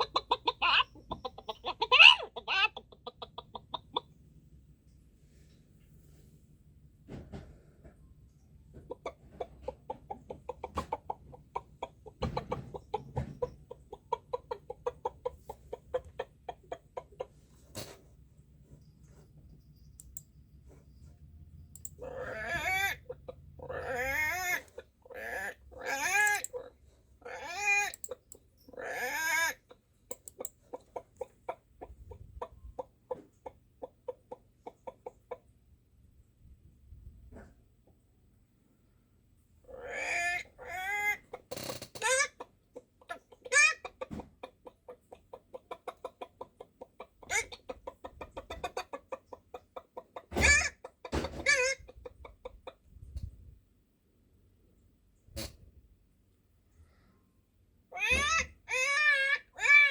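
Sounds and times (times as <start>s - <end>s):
chicken clucking: 0.0s - 4.2s, 8.7s - 18.0s, 22.0s - 35.6s, 39.6s - 53.3s.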